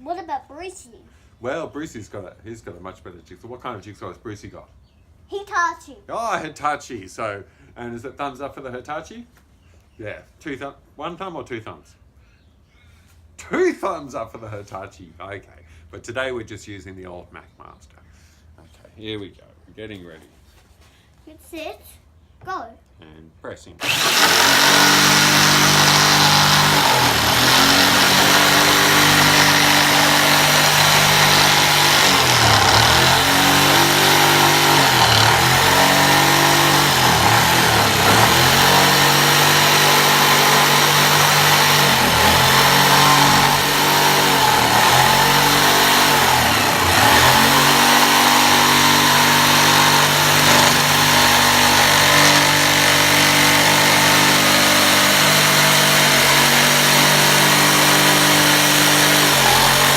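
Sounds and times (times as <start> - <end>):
electric jigsaw cutting wood: 23.8 - 59.9.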